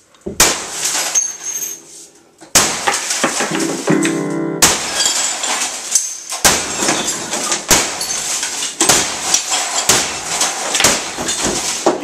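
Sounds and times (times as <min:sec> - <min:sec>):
sledgehammer smashing tv: 0:00.4 - 0:01.2, 0:02.5 - 0:12.0
broken glass tinkling: 0:00.9 - 0:01.9, 0:04.6 - 0:12.0.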